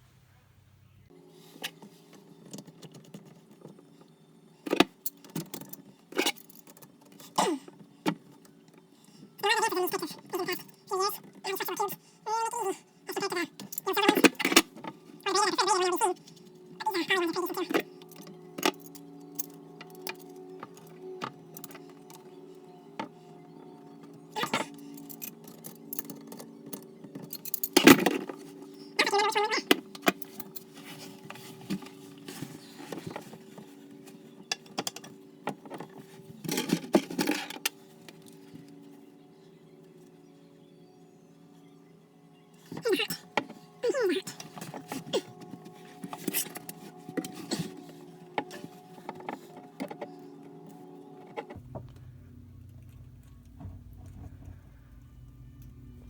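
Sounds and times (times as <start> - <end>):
small metal parts clinking: 4.6 - 8.9, 13.5 - 14.9, 16.1 - 22.3, 24.1 - 38.5
metal plumbing parts clinking: 24.5 - 28.4, 34.5 - 37.7
steady low hum: 50.2 - 56.0.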